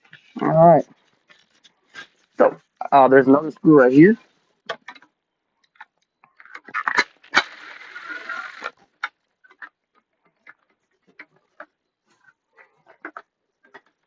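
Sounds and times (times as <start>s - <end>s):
rough rasping noise: 6.4s - 14.0s.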